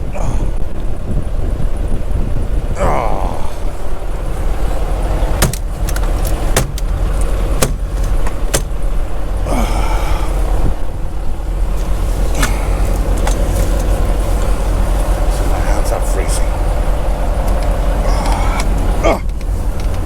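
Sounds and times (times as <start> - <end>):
diesel truck engine idling: 0.0 - 20.0
sharp clicks and knocks: 4.8 - 9.2, 11.8 - 14.6, 17.4 - 20.0.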